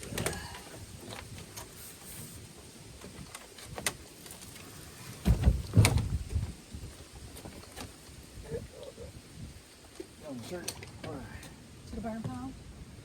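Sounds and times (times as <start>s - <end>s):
door thumps and bumps: 5.2s - 6.6s.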